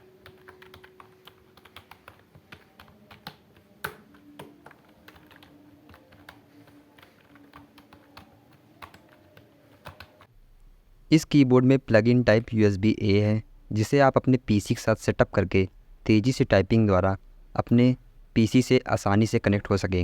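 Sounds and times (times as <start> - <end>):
keyboard typing clicks: 0.0 - 10.3.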